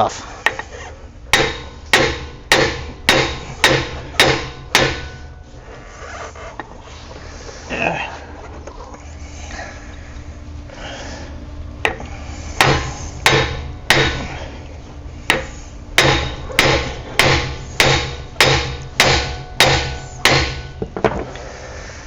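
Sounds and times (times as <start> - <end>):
hammer striking metal: 1.3 - 5.4, 12.6 - 14.3, 15.3 - 21.1.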